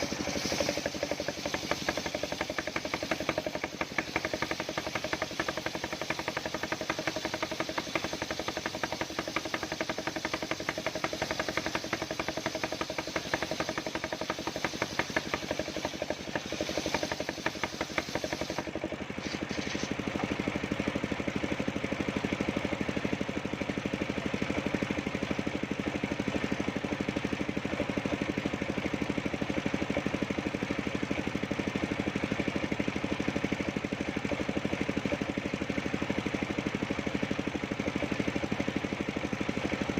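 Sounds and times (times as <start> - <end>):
saw cutting wood hiss: 0.0 - 20.4
engine running with fast pulse: 0.0 - 39.9.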